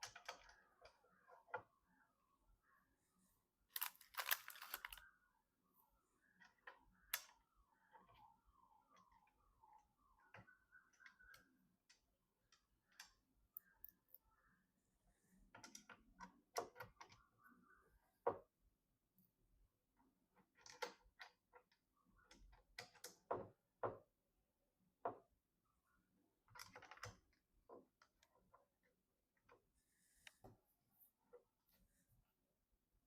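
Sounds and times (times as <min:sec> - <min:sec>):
small plastic and metal parts clicking: 0:03.7 - 0:05.0.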